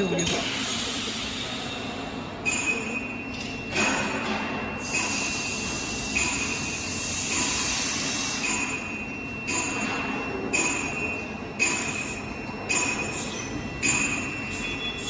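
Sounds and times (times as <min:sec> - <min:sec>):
welding machine whine: 0:00.0 - 0:15.0
machine hiss: 0:00.3 - 0:02.2, 0:04.8 - 0:09.9.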